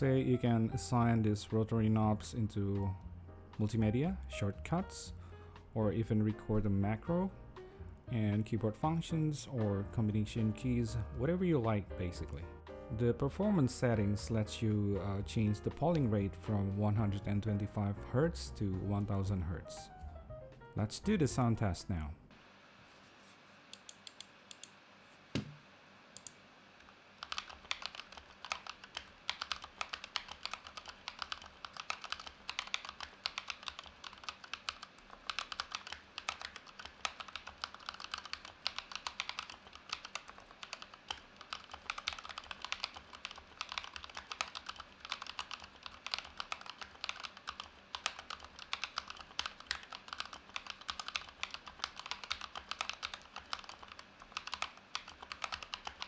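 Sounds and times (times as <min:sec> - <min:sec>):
mechanical keyboard typing: 0:27.2 - 0:56.0.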